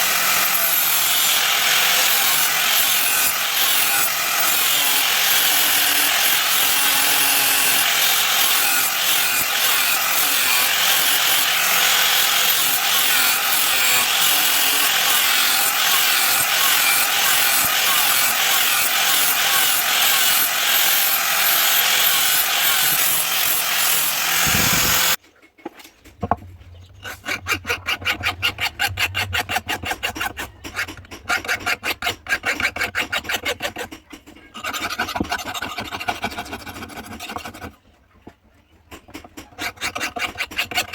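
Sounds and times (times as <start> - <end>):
power grinder on steel blade: 0.0 - 25.2
file scraping steel by hand: 0.0 - 25.8, 26.8 - 37.8, 39.0 - 40.9.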